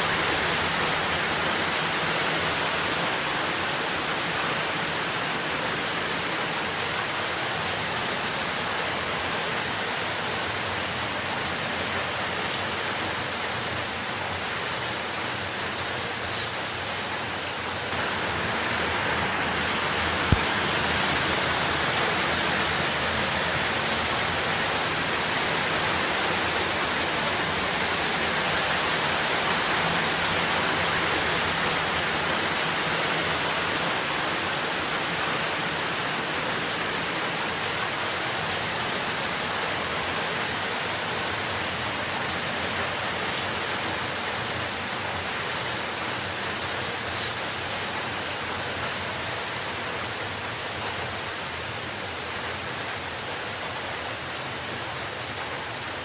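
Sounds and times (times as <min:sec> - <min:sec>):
heavy rain: 0:00.0 - 0:56.0.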